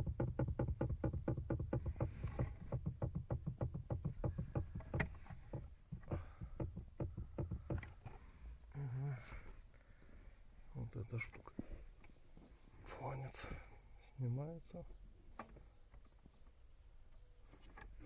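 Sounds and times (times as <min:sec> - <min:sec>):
heater core knocking: 0:00.0 - 0:07.9.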